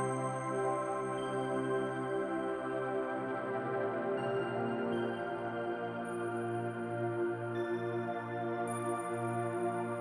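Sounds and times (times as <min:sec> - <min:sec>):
ambient new-age music: 0:00.0 - 0:10.0.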